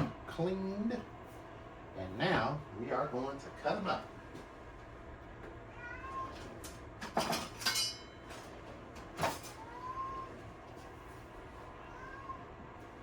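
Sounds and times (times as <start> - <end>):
faint high-pitched cries: 5.7 - 6.6, 9.4 - 10.5, 11.7 - 12.6.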